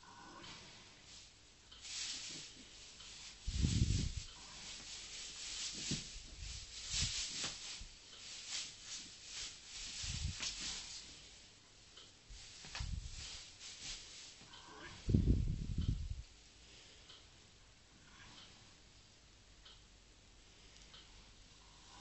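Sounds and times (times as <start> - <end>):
rustling and scuffing: 0.7 - 11.5, 12.3 - 16.2.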